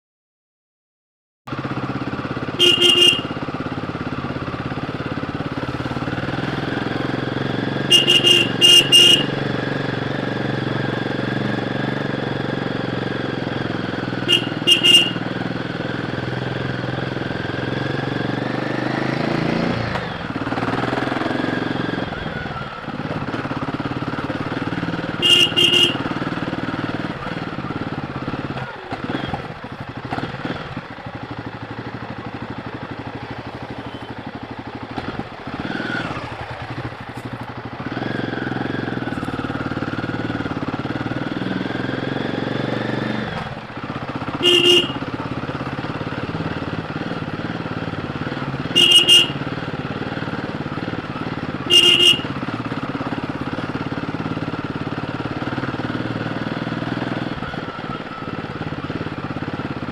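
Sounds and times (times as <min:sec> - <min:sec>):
motorcycle engine on the road: 0:01.5 - 0:59.9
short horn beeps: 0:02.6 - 0:03.4, 0:07.8 - 0:09.5, 0:14.3 - 0:15.3, 0:25.1 - 0:26.2, 0:33.7 - 0:34.3, 0:44.4 - 0:45.1, 0:48.7 - 0:49.5, 0:51.7 - 0:52.4.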